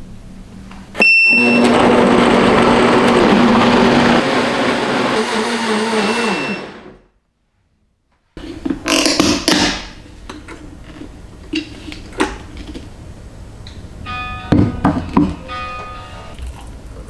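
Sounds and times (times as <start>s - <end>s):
household objects knocking: 14.4s - 15.9s.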